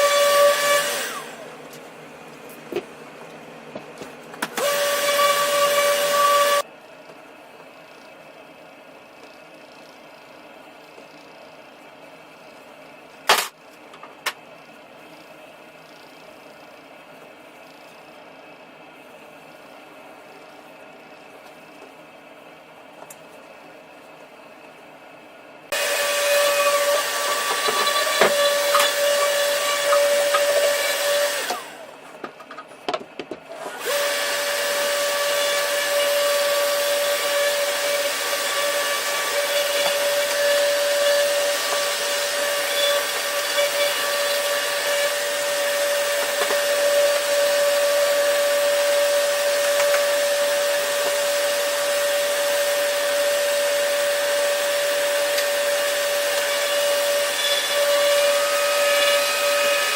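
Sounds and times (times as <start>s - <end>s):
power tool whining: 0.0s - 1.6s, 4.4s - 6.7s, 25.7s - 31.9s, 33.5s - 59.9s.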